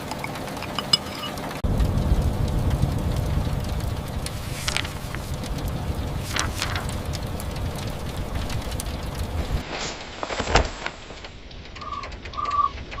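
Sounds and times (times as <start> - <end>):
crackling raindrops: 0.0 - 13.0
rain and wind rumble: 0.0 - 13.0
sharp crack: 1.6 - 13.0
bird whistling: 11.8 - 13.0.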